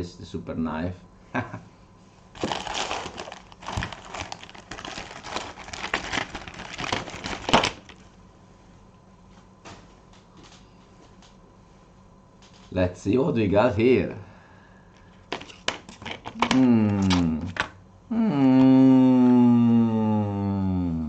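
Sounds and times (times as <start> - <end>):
packaging crinkling and rustling: 2.3 - 8.1, 15.2 - 17.7.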